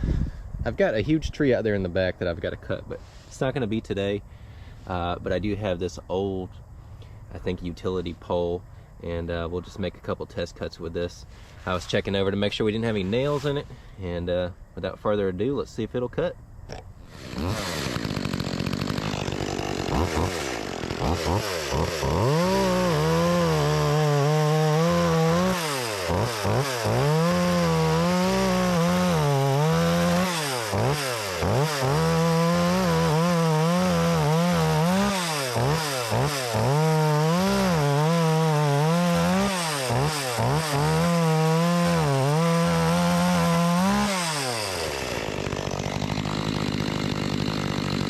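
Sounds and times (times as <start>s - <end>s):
chainsaw cutting wood: 16.7s - 48.0s.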